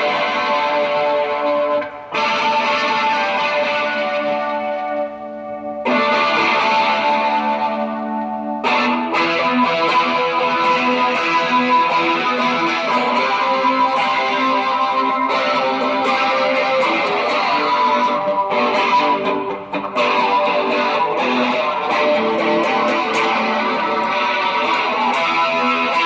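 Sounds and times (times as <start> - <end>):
electric guitar playing: 0.0 - 26.0.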